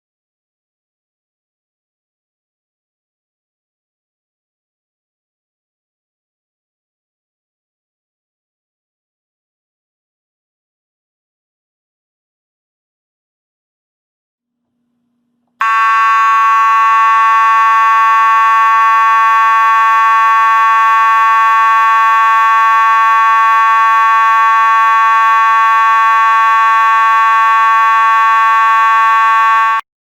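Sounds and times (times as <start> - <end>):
fire alarm horn steady tone: 15.6 - 29.9.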